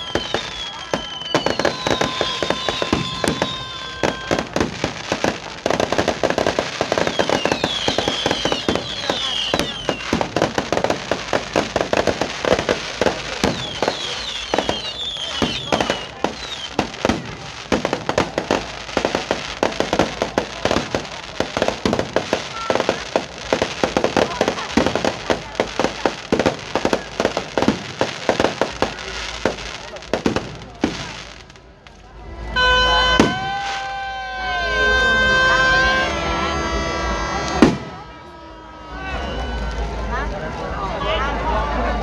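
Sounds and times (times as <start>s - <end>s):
high falling firework whistles: 0.0s - 10.4s, 13.4s - 16.8s, 32.3s - 40.0s
fireworks bangs and crackles: 0.0s - 42.0s.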